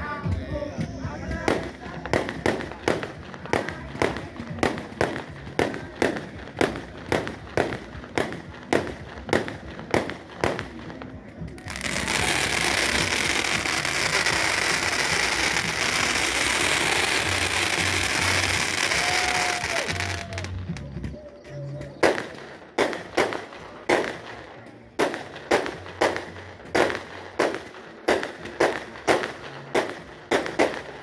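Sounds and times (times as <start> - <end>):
fireworks crackling: 0.0 - 21.2, 21.8 - 31.0
fireworks bangs: 0.2 - 20.9.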